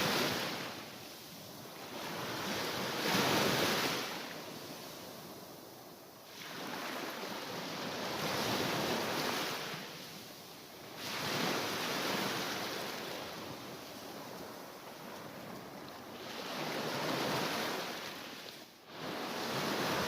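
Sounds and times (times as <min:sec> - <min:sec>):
waves washing onto shore: 0:00.0 - 0:20.0.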